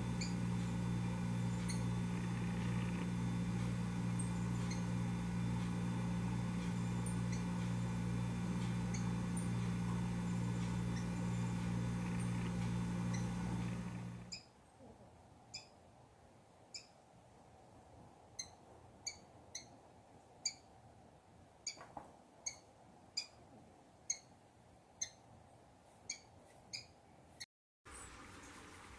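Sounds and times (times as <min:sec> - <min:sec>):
low hum: 0:00.0 - 0:14.4.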